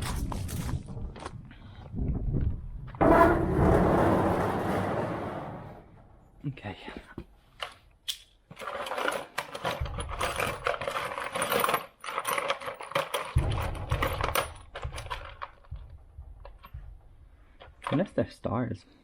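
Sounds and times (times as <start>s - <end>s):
metal screws clinking and rattling: 7.6s - 16.8s.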